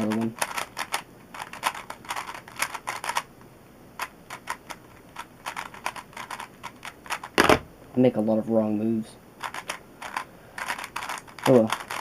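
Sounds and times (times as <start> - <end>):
puzzle cube clacking: 0.0 - 3.3, 4.0 - 7.7, 9.4 - 12.0.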